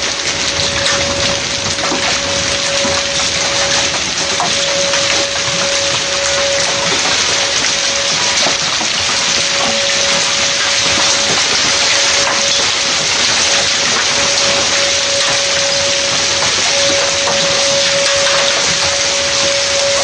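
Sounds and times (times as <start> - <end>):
heavy rain downpour: 0.0 - 20.0
steady tone: 0.4 - 12.9.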